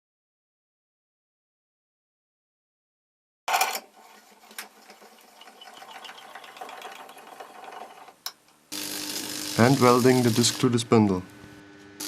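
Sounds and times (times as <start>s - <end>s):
drill gearing ticking: 8.8s - 10.7s
hole saw cutting steel: 8.8s - 10.8s.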